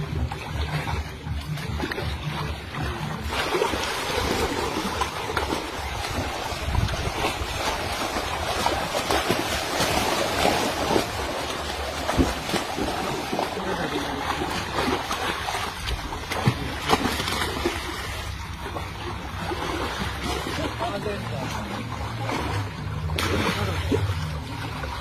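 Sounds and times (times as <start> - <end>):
water splashing in a ditch: 0.0 - 25.0.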